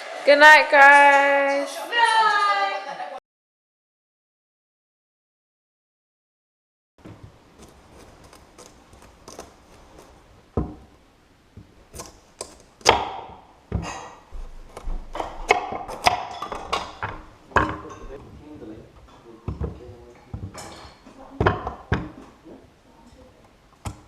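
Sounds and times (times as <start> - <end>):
kitchenware knocking and clinking: 12.8 - 18.4, 19.0 - 22.4.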